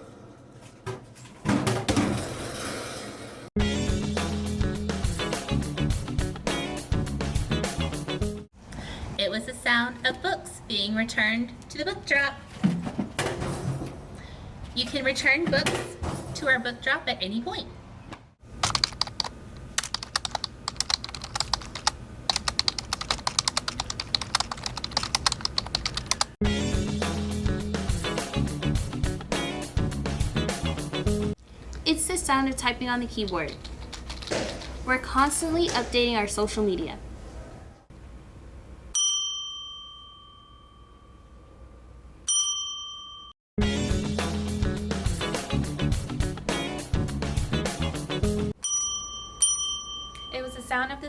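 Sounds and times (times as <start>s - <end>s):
typing on keyboard: 18.6s - 26.4s
desk service bell ringing: 39.0s - 41.6s, 42.3s - 43.4s, 48.6s - 51.0s.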